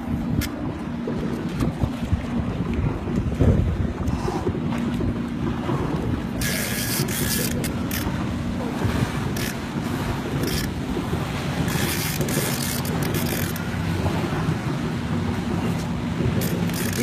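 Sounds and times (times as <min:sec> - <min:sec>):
moving seawater: 0:00.0 - 0:17.0
wind buffeting microphone: 0:00.0 - 0:17.0.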